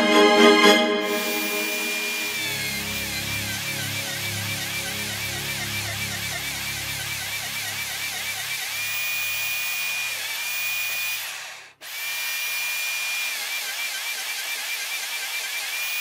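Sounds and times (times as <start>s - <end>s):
power drill motor whine: 1.1s - 16.0s.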